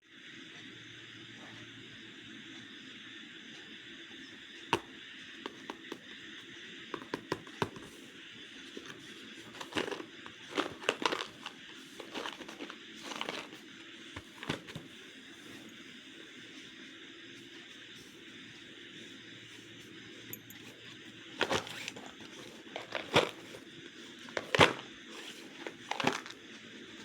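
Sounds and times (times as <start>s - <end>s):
plastic wrapper crinkling: 8.8s - 13.6s, 14.2s - 14.9s, 21.4s - 23.6s, 24.3s - 26.4s.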